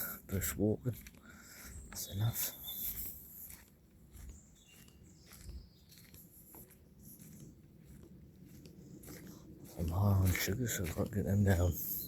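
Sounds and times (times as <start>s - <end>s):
footsteps on walking track: 0.0s - 12.0s
soft bird chirps: 1.3s - 7.9s.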